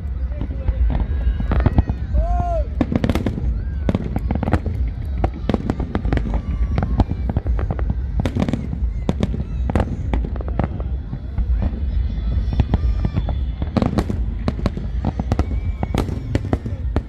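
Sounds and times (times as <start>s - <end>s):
fireworks bangs and cracks: 0.0s - 17.0s.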